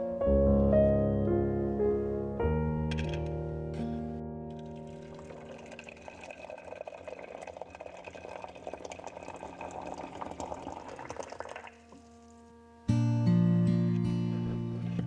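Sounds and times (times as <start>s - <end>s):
water bubbling and trickling: 4.5s - 12.4s.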